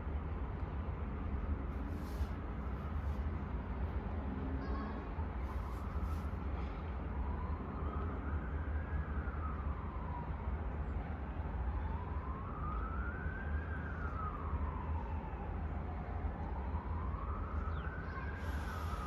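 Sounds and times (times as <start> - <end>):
siren wailing: 11.7 - 19.0.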